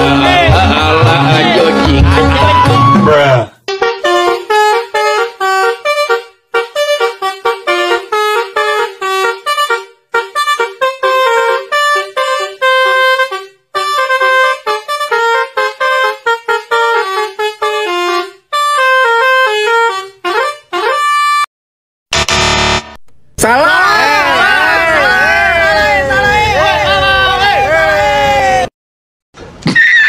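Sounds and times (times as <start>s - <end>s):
multi-tone horn playing tune: 1.7s - 21.5s, 22.2s - 23.0s.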